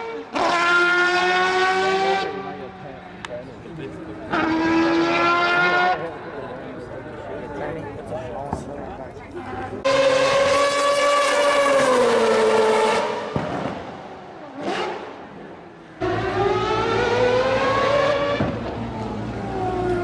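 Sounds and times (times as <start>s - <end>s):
racing car engines passing: 0.0s - 8.0s, 9.3s - 20.0s.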